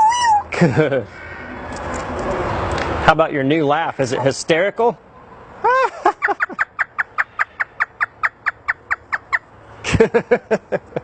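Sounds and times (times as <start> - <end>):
parrot mimicking laugh: 0.0 - 0.5, 5.6 - 9.4.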